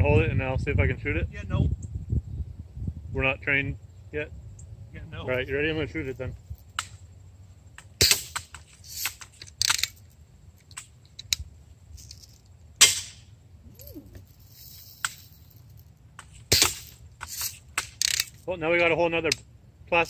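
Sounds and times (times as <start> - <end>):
bb gun shots: 8.0 - 9.2, 12.8 - 13.3, 16.5 - 17.0
short hiss: 8.0 - 9.9, 16.3 - 18.2.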